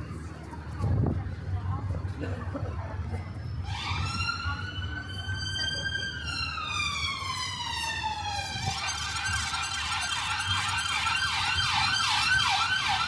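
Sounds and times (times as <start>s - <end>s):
street traffic rumbling: 0.0s - 13.0s
emergency vehicle siren wailing: 3.6s - 13.0s.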